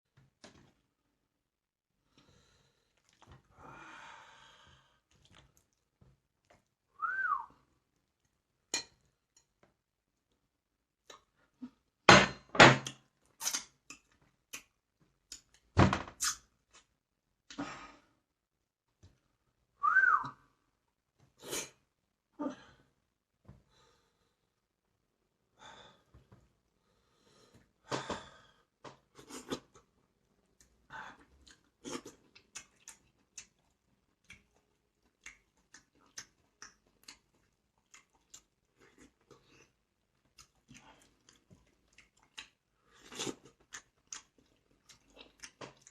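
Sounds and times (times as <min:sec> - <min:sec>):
eating crunches and bites: 0:02.9 - 0:03.5, 0:31.2 - 0:45.9.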